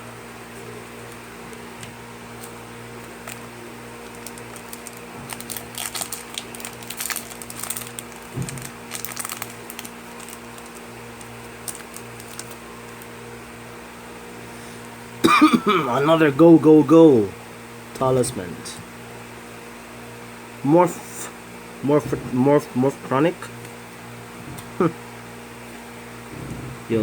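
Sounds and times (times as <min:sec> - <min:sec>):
steady low hum: 0:00.0 - 0:27.0
cards and foil wrapping crinkling: 0:01.1 - 0:13.1.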